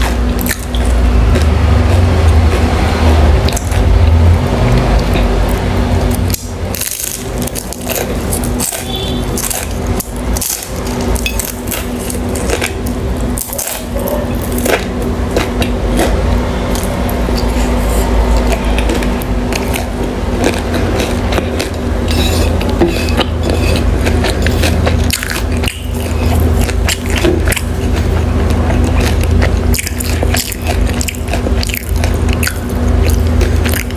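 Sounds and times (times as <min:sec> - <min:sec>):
utensils clicking and scraping dish: 0:19.6 - 0:33.9.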